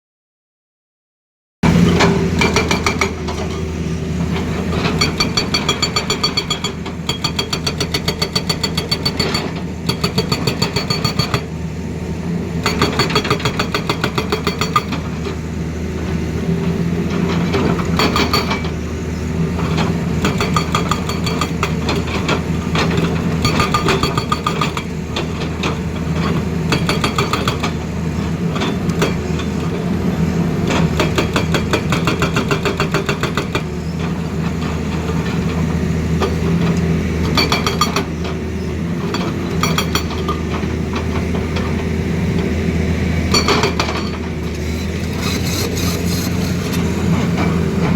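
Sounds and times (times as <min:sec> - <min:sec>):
hydraulic breaker hammering: 0:01.6 - 0:03.6, 0:12.6 - 0:15.1, 0:19.8 - 0:29.3, 0:43.2 - 0:47.9
diesel engine drone: 0:01.6 - 0:47.9.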